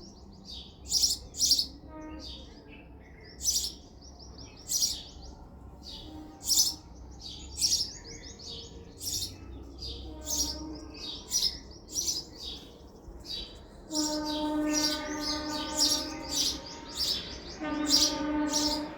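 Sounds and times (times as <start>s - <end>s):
sparrow chirping: 0.0s - 18.9s
steady horn-like tone: 10.0s - 12.1s, 13.2s - 18.9s.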